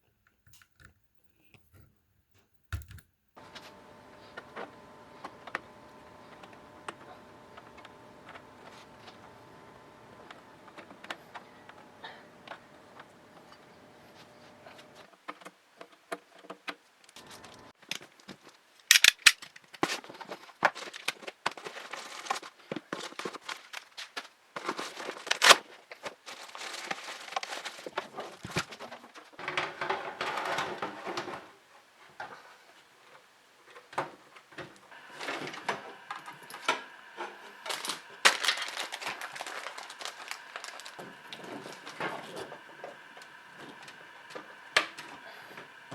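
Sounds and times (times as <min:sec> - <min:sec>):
plastic packaging rustling: 0:17.2 - 0:31.5, 0:34.9 - 0:45.9.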